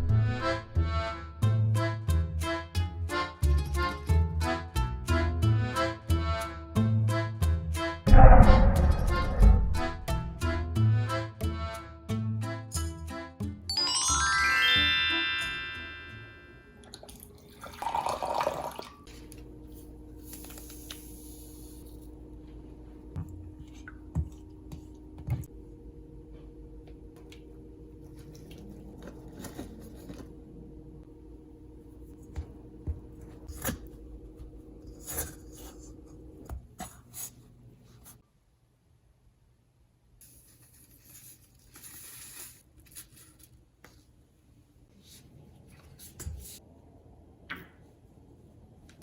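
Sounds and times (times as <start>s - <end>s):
steady low hum: 0.0s - 1.0s, 8.1s - 10.7s, 19.2s - 38.0s
bouncy music with plucked notes: 12.6s - 16.4s
rising chime run: 13.7s - 16.7s.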